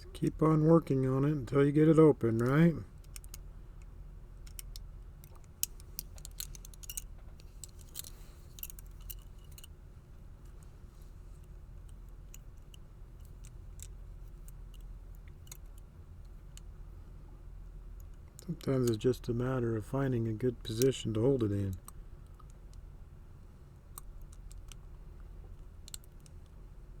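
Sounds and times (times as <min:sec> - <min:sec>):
lock pick clicking in padlock: 0:04.4 - 0:09.7.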